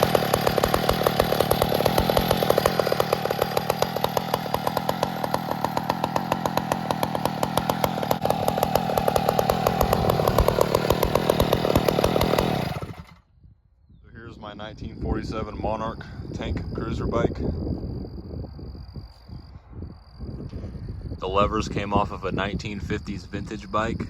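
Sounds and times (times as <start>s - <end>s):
small single-cylinder engine running: 0.0s - 13.2s.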